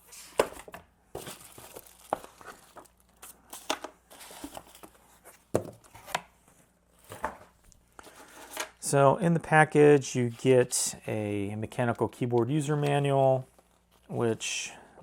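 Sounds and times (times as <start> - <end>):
cardboard packaging crinkling: 1.1 - 5.2.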